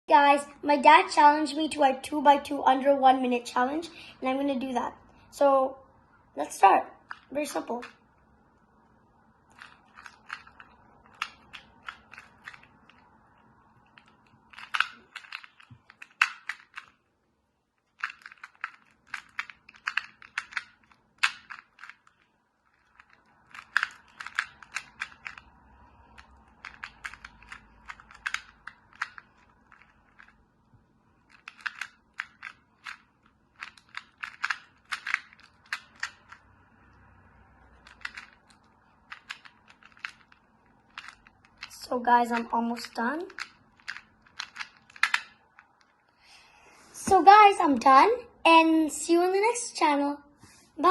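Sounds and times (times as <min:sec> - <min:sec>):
plastic puzzle cube clicking: 0:09.5 - 0:13.0, 0:13.8 - 0:17.0, 0:18.0 - 0:25.5, 0:26.1 - 0:30.4, 0:31.2 - 0:36.4, 0:37.7 - 0:41.8, 0:42.4 - 0:45.8.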